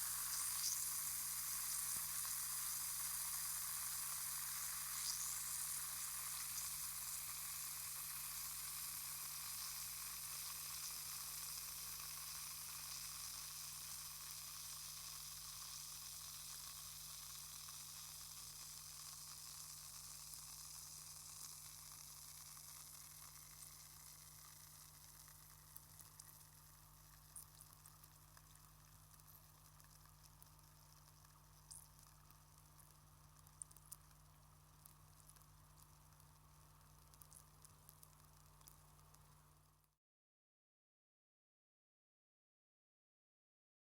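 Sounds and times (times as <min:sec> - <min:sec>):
tablet fizzing in water: 0:00.0 - 0:07.4.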